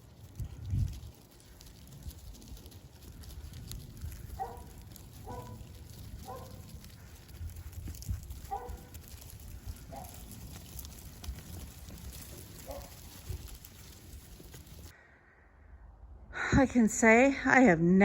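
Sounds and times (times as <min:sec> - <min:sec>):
low rumble: 0:00.0 - 0:17.8.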